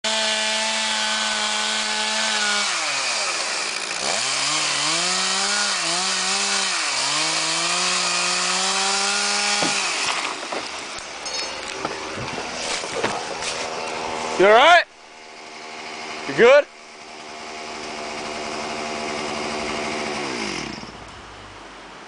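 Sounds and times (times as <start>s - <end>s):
chainsaw running at high revs: 0.0s - 10.5s, 11.9s - 21.0s
knocks and cracks: 9.4s - 10.8s.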